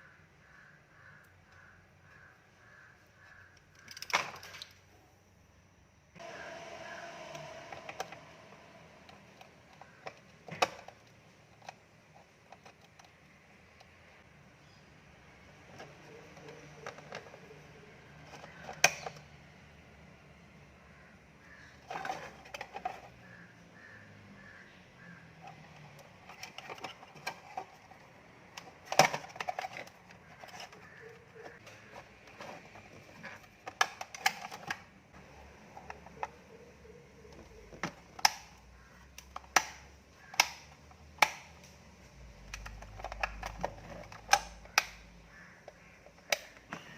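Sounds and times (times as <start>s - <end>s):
faint steady hum: 4.9s - 21.7s
hard objects clicking and knocking: 9.1s - 14.2s, 15.6s - 19.2s, 25.4s - 46.9s.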